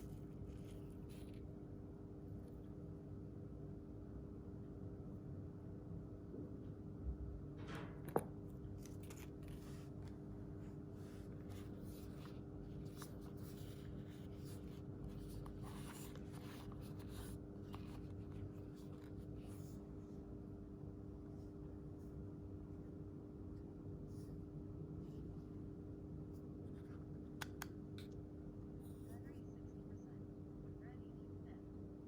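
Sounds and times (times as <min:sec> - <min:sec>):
steady hum: 0:00.0 - 0:03.1, 0:07.8 - 0:32.0
objects rustling and scraping: 0:08.8 - 0:19.8.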